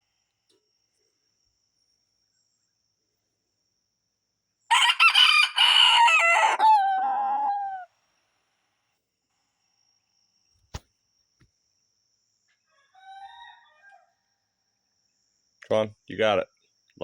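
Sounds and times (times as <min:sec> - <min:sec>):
rooster crowing: 0:04.7 - 0:07.9, 0:12.7 - 0:14.3.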